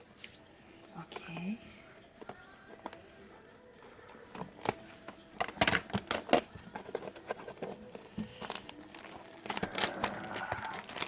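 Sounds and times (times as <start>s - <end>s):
packaging tearing and crinkling: 5.4s - 11.0s.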